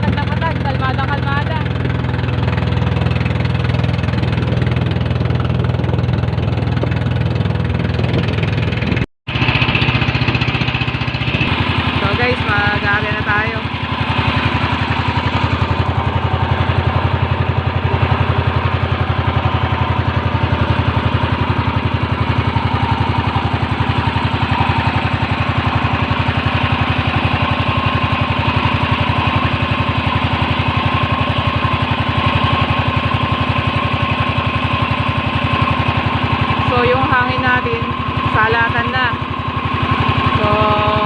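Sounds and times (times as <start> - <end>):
boat engine running: 0.0 - 41.0.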